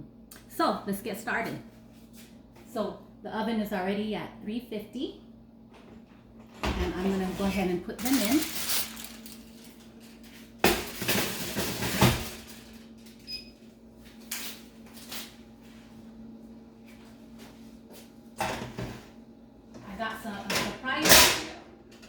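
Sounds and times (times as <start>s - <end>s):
steady low hum: 0.0s - 22.0s
baking tray clattering on rack: 10.6s - 12.5s, 20.5s - 21.6s
oven door opening and shutting: 20.4s - 22.0s.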